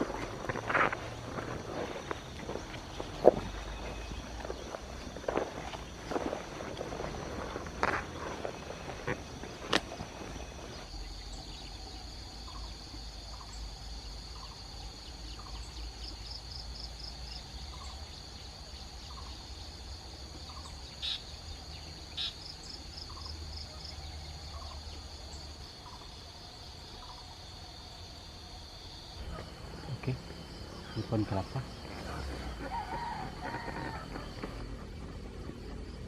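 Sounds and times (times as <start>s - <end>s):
birds calling: 0.0s - 16.6s, 29.2s - 36.0s
insects droning: 0.0s - 36.0s.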